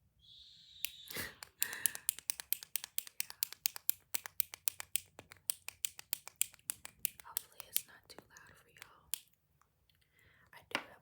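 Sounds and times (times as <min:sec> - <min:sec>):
toy clicking rapidly: 0:01.1 - 0:08.0.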